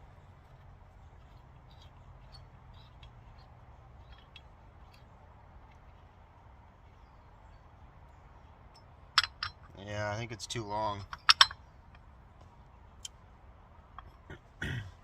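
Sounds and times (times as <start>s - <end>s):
low steady hum: 0.0s - 15.0s
small metal clicks of bolt threading: 1.2s - 6.2s, 8.7s - 9.8s, 10.9s - 12.0s.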